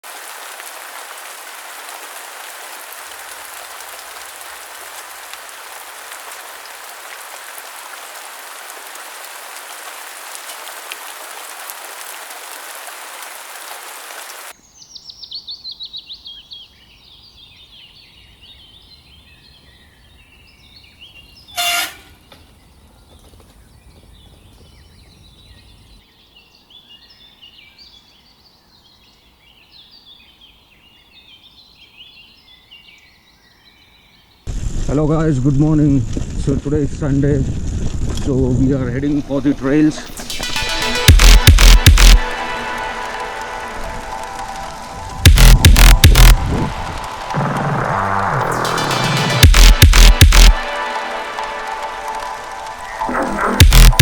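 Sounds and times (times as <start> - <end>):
loud shrill bird call: 21.5 - 22.3
steady rushing hiss: 40.1 - 54.0.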